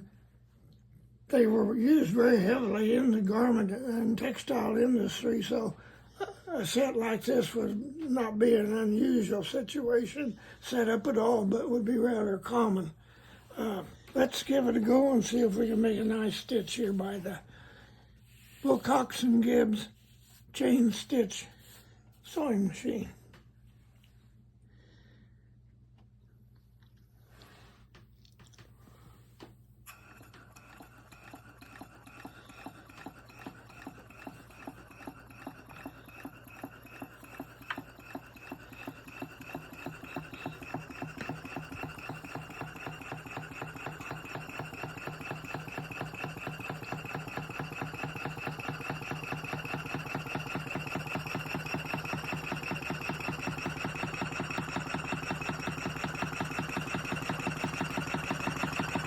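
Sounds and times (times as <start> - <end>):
sewing machine clatter: 29.9 - 59.0.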